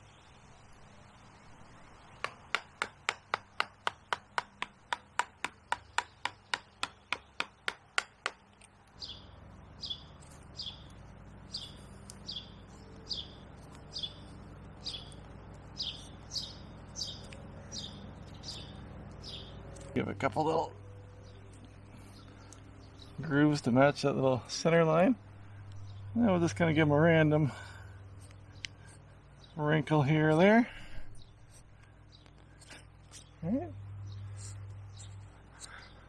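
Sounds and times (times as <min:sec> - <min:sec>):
bird chirping: 0:00.0 - 0:36.0
mallet tapping carving gouge: 0:02.2 - 0:08.6.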